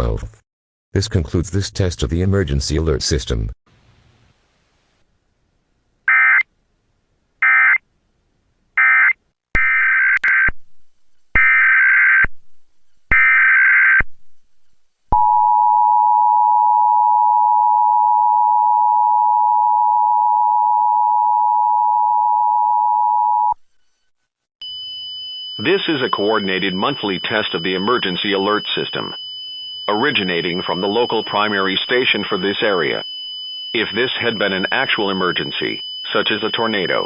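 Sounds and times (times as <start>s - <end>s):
data burst tones: 24.6s - 37.0s.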